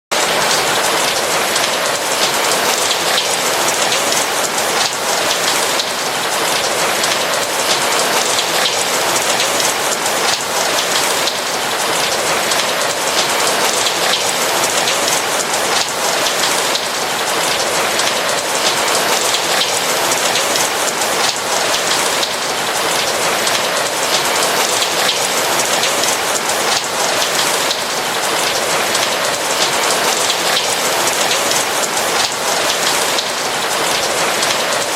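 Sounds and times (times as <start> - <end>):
steady rain pattering: 0.1 - 34.9.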